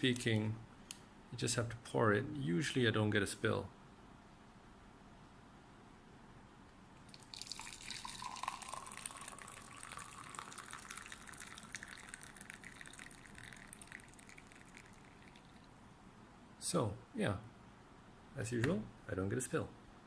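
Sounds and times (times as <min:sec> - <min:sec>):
coffee pouring into a cup: 0:07.0 - 0:15.8.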